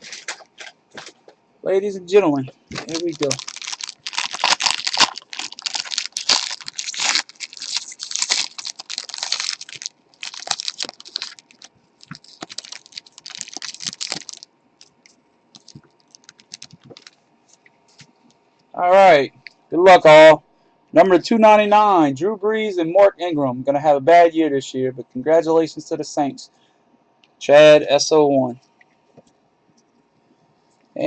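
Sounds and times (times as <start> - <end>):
wrapper tearing and crinkling: 0.0 - 1.2, 2.7 - 17.2.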